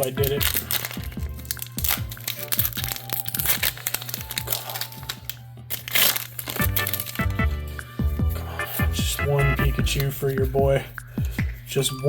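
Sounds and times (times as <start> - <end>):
foil wrapper crinkling and tearing: 0.0 - 7.7
background music: 0.0 - 12.0.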